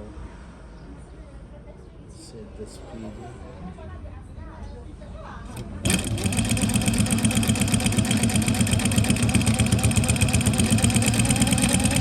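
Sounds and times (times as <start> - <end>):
industrial sewing machine rattling: 5.5 - 12.0.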